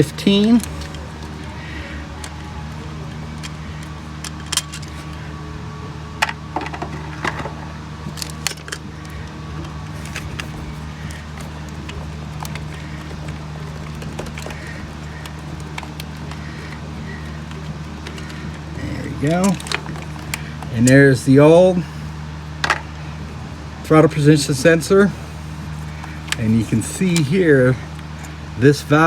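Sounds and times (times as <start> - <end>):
steady low hum: 0.0 - 29.0
metal screwdriver clicking on screws: 3.4 - 5.1, 9.9 - 18.4.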